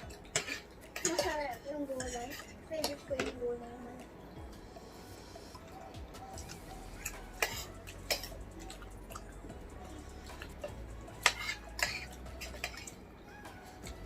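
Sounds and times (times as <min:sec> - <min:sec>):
cutlery clinking against a plate: 0:00.0 - 0:03.4, 0:06.3 - 0:08.8, 0:10.4 - 0:13.0.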